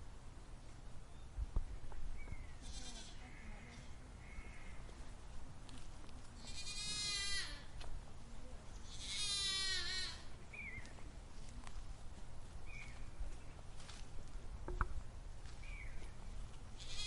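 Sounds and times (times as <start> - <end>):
goat bleating: 2.6 - 3.9, 6.4 - 7.8, 8.8 - 10.3, 16.8 - 17.0.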